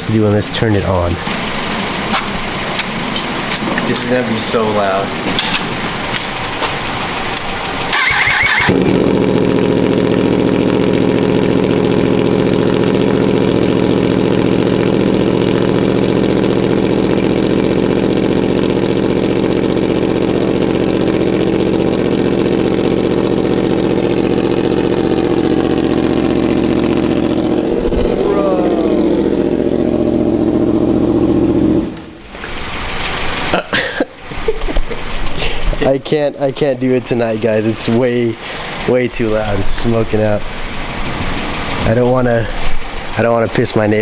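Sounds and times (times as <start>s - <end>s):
motorcycle starter cranking: 7.4s - 33.5s
loud motorcycle engine idling: 7.6s - 33.6s.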